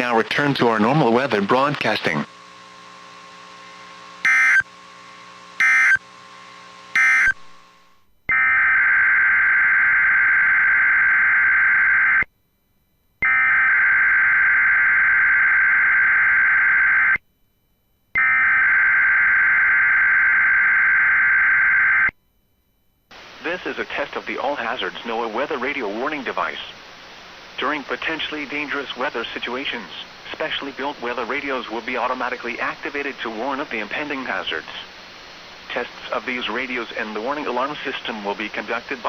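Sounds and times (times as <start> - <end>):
buzzy two-tone data bursts: 4.2 - 4.7, 5.6 - 6.0, 6.9 - 7.5.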